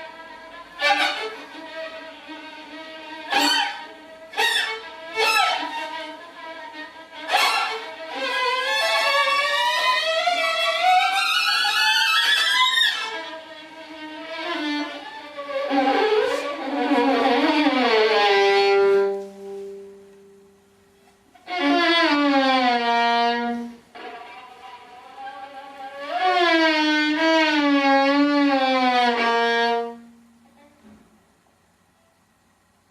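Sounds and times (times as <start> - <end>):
sliding string-like tones: 0.0 - 20.0.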